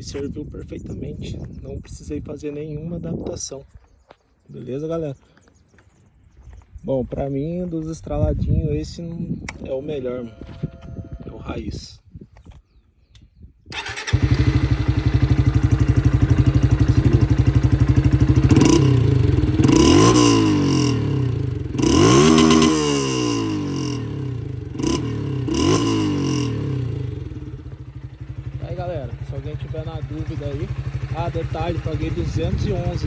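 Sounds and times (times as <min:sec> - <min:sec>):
motorcycle engine idling and revving: 0:13.7 - 0:33.0.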